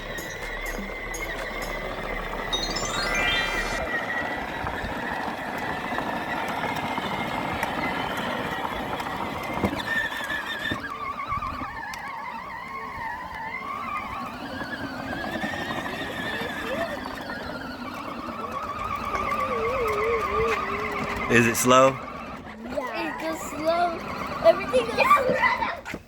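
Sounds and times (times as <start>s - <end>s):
wavering high sounds: 0.0s - 4.4s
ride-on toy car electric motor: 0.0s - 26.0s.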